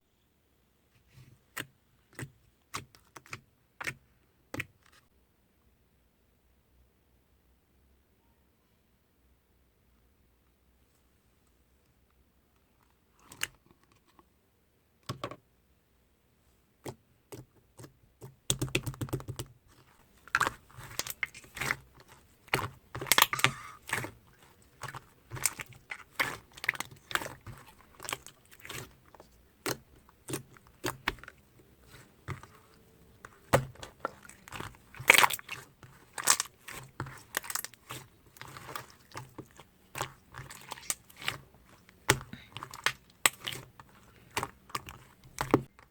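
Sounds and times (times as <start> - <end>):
slime squished by hand: 18.5 - 45.9.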